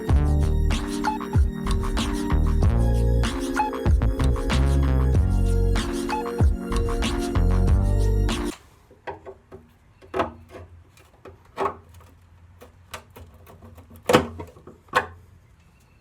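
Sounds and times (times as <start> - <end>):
background music: 0.0 - 8.6.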